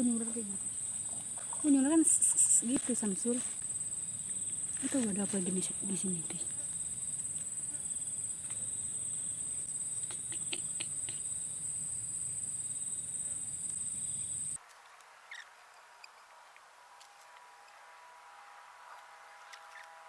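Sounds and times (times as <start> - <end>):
high-pitched insect trill: 0.0 - 14.6.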